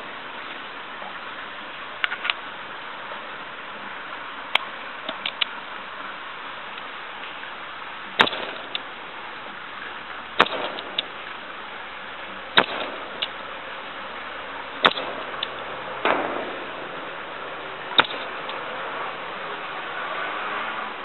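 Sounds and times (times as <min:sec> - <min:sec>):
soft rush of noise: 0:00.0 - 0:21.0
airgun shots: 0:08.2 - 0:08.9, 0:10.4 - 0:11.2, 0:12.6 - 0:13.4, 0:14.8 - 0:18.7.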